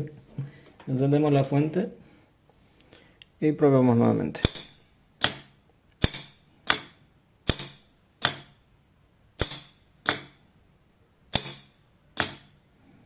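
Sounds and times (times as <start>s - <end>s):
solenoid lock and relay clacking: 4.4s - 8.6s, 9.4s - 10.4s, 11.3s - 12.6s.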